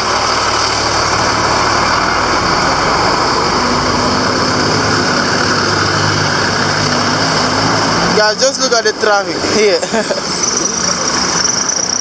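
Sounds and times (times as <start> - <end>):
low engine hum: 0.0 - 8.2
vehicle engines running: 0.0 - 12.0.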